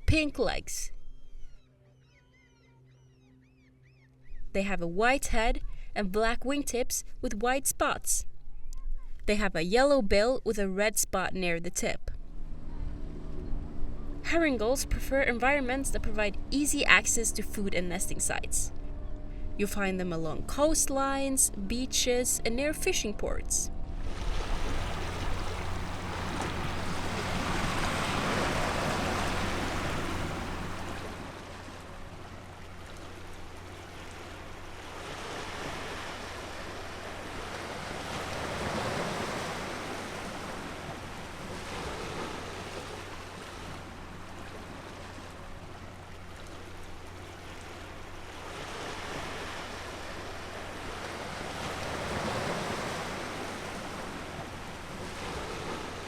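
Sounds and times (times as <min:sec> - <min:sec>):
low steady hum: 0:00.0 - 0:56.0
sea waves washing ashore: 0:12.4 - 0:56.0.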